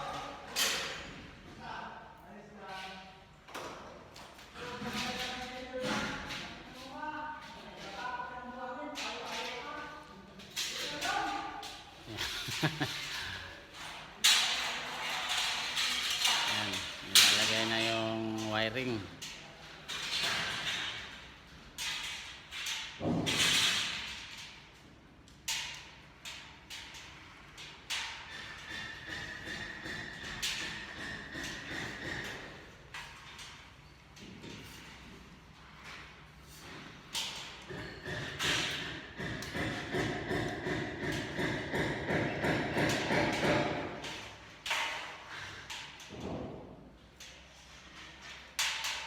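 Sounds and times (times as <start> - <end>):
construction knocks and thuds: 23.0 - 24.1, 36.6 - 45.1, 46.0 - 46.9.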